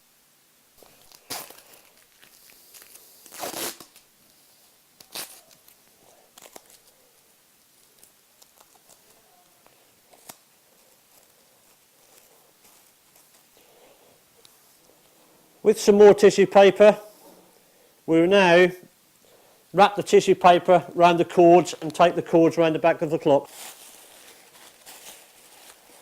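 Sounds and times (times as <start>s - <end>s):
masking tape ripping: 0.8s - 4.1s, 5.0s - 6.9s, 10.1s - 10.5s
paper rustling and clicking: 7.8s - 13.5s.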